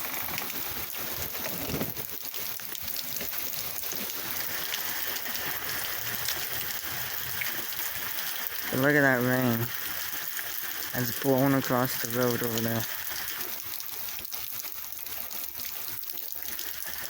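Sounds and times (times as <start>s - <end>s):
heavy rain pouring: 0.0s - 17.0s.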